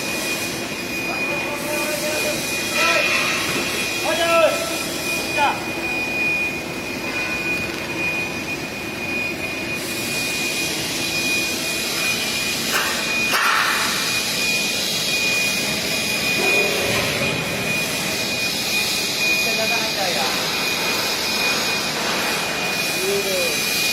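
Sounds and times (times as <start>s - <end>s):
thin high whine: 0.0s - 23.9s
welding hiss: 1.3s - 5.3s, 11.8s - 23.9s.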